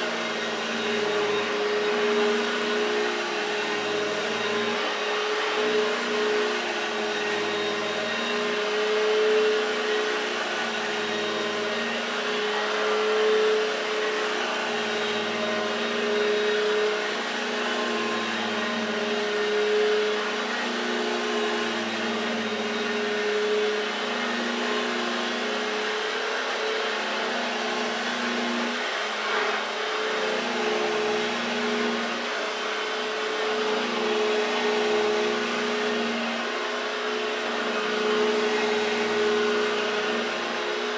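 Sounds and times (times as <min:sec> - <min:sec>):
vacuum cleaner motor hum: 0:00.0 - 0:40.9.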